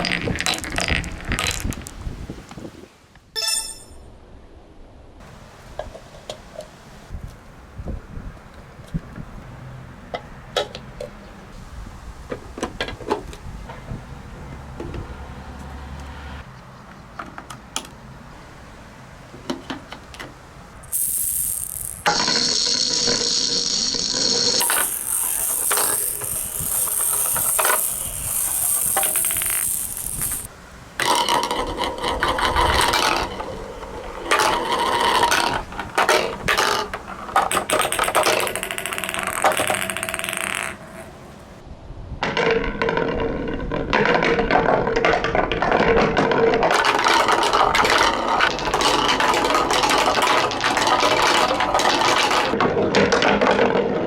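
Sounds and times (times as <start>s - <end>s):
marbles clattering down track: 0.0s - 1.9s, 20.8s - 41.4s, 46.6s - 54.0s
high ringing tone: 3.4s - 4.1s.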